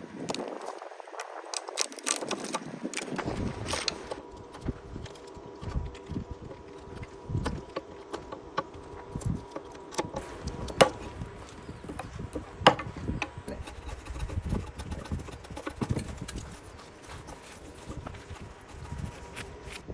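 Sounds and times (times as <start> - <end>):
sharp wood cracks: 0.2 - 19.9
knocks and taps on timber: 11.9 - 13.3.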